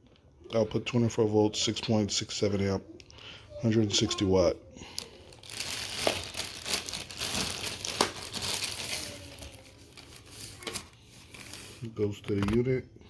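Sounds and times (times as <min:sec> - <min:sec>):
packaging crinkling: 0:05.0 - 0:12.6.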